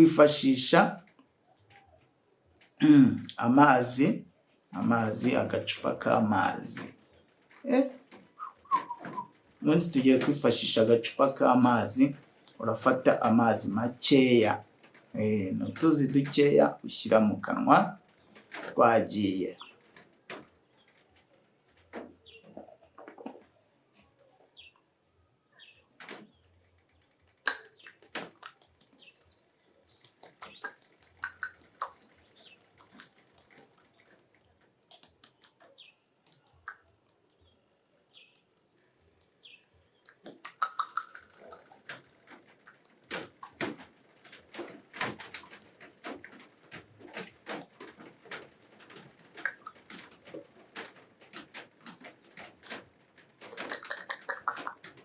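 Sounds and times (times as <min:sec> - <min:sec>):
wet mouth smacking and squelching: 0:27.4 - 0:29.0, 0:30.1 - 0:32.1, 0:40.0 - 0:42.0, 0:49.4 - 0:49.9, 0:53.5 - 0:55.0.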